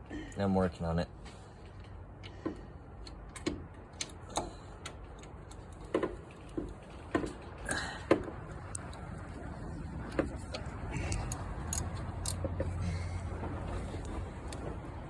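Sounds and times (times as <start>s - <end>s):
wrench clicking on bolts: 10.5s - 14.7s.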